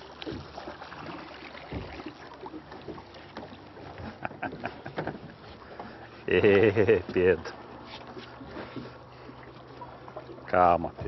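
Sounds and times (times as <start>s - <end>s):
water rushing past boat: 0.0s - 11.0s
hull and fishing gear knocks: 1.7s - 2.0s, 2.9s - 5.4s.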